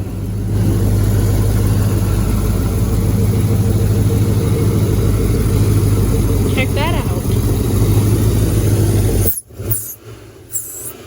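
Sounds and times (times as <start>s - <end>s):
truck engine idling: 0.0s - 11.0s.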